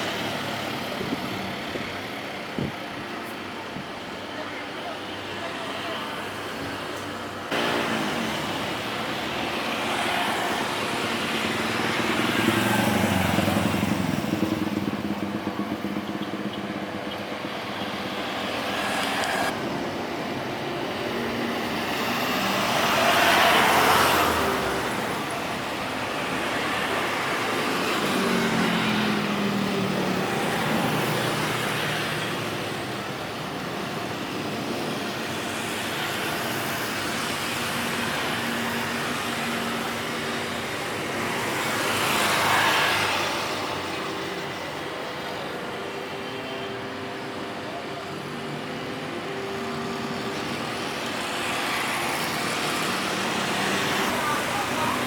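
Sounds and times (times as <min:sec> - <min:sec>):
vehicle engine noise: 0:00.0 - 0:55.0
vehicle passing by: 0:21.8 - 0:25.3.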